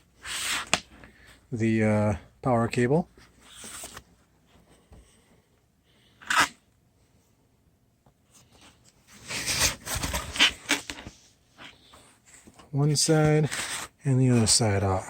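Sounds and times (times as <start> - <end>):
packing material rustling and tearing: 9.2 - 10.8.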